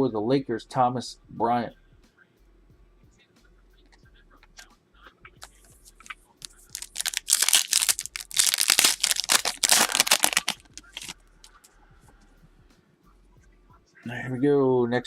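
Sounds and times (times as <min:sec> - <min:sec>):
wrapper tearing and crinkling: 0:06.4 - 0:11.1.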